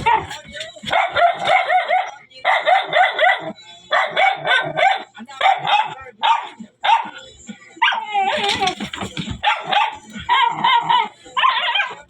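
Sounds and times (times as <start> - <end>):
dog yipping and barking: 0.9 - 7.2, 9.4 - 12.0.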